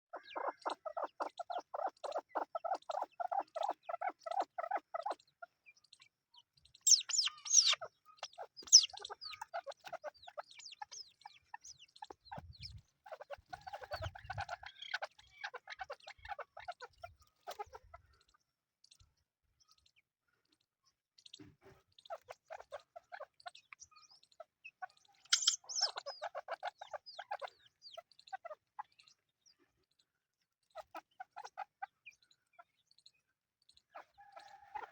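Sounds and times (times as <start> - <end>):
partridge chicks chirping: 0.0 - 34.9.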